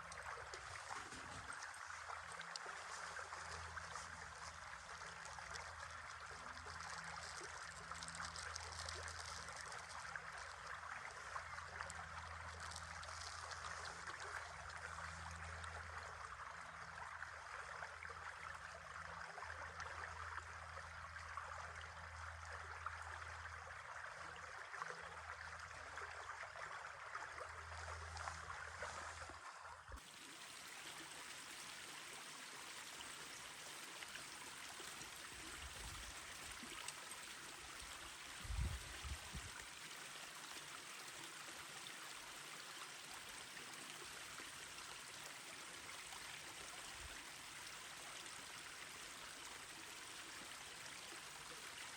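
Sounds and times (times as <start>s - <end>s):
low water rumble: 0.0s - 30.0s, 37.6s - 39.8s.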